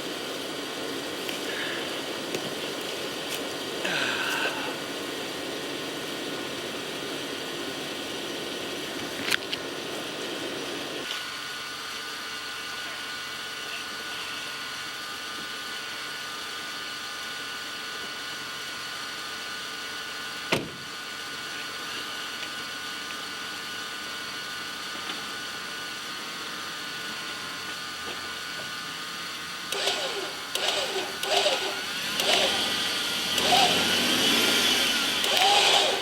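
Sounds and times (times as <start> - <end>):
motor hum with held tones: 0.0 - 36.0.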